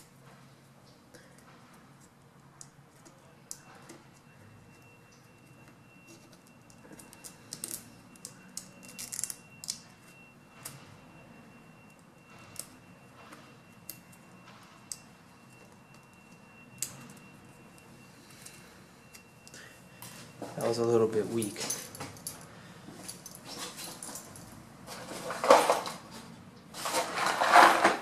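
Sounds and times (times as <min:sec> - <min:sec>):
faint high whine: 0:03.1 - 0:23.4.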